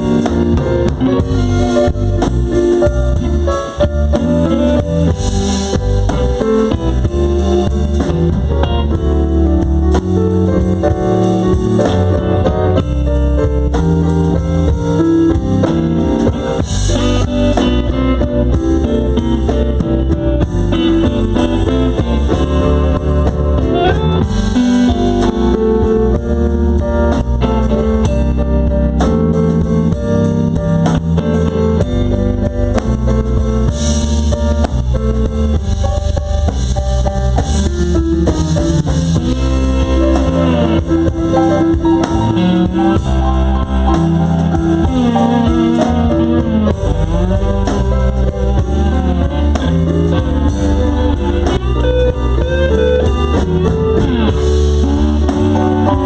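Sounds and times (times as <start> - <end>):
bass: 0.0 - 56.0
drum kit: 0.0 - 56.0
lead guitar solo: 15.3 - 28.6, 37.9 - 56.0.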